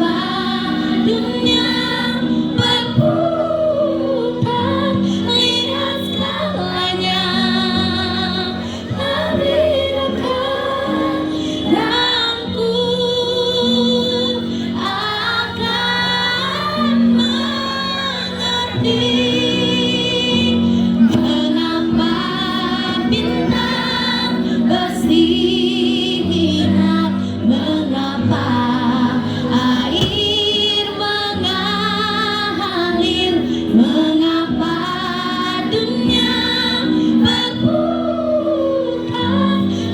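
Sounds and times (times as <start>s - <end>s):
children's choir singing: 0.0s - 39.9s.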